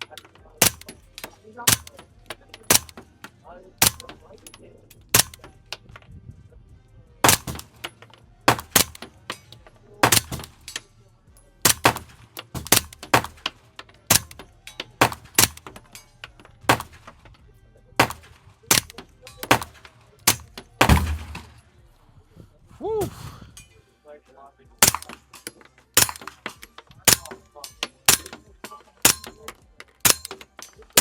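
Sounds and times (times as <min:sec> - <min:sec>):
suppressed pistol shots: 0:00.6 - 0:04.3, 0:05.1 - 0:06.0, 0:07.2 - 0:10.8, 0:11.6 - 0:17.4, 0:18.0 - 0:21.6, 0:24.8 - 0:31.0.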